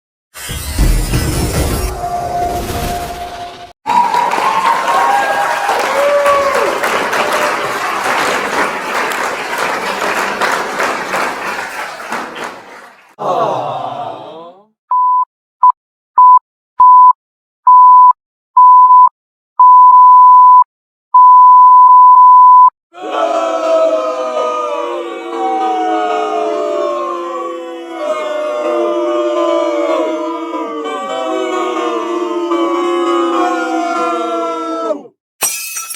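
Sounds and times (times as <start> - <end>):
crowd applause and cheering: 3.8 - 14.3, 23.0 - 34.2
censor bleeps: 21.2 - 22.7.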